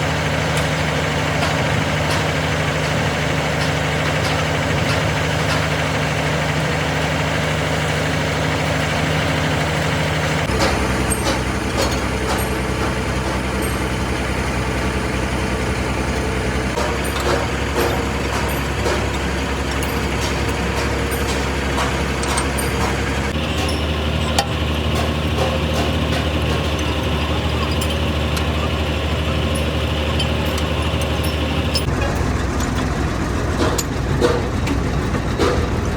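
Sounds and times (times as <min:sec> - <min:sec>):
heavy engine running: 0:00.0 - 0:35.9
metallic clicks and knocks: 0:16.7 - 0:28.7, 0:29.4 - 0:33.0.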